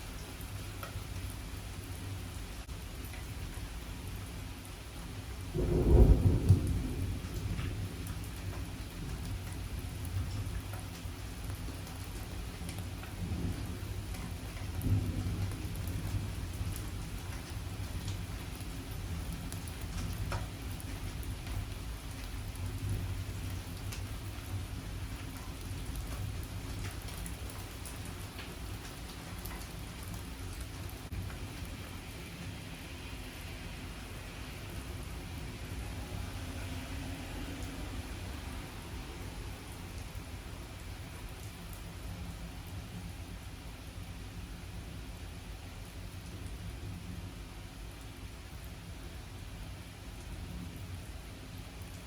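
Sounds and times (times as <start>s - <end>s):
raindrop ticks: 0.2s - 1.3s, 2.6s - 3.7s, 5.6s - 31.8s
low rumble of thunder: 5.5s - 10.8s, 13.2s - 21.7s.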